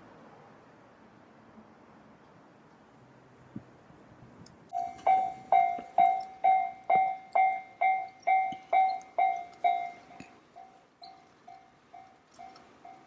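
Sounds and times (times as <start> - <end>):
level crossing warning bell: 4.7 - 13.0.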